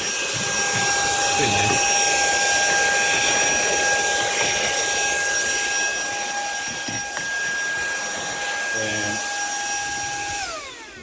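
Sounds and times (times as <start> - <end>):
handheld vacuum cleaner whining: 0.0 - 11.0.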